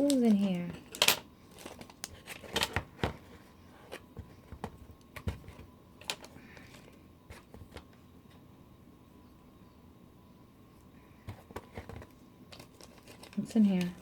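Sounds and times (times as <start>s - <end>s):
plastic toy package being opened: 12.0s - 14.0s.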